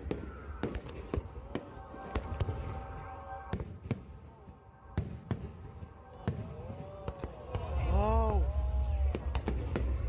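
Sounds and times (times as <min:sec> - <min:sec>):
fireworks bursting: 0:00.0 - 0:10.0.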